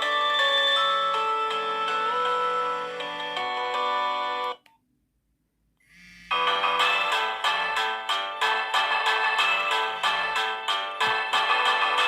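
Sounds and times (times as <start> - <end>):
mobile phone ringtone melody: 0.0 - 4.6, 5.9 - 12.0.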